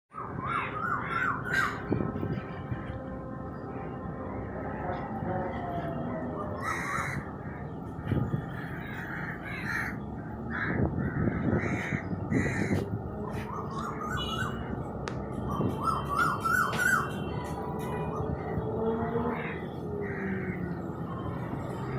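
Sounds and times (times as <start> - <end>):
birds calling: 0.1 - 2.4, 6.5 - 17.4
wind: 0.1 - 21.9.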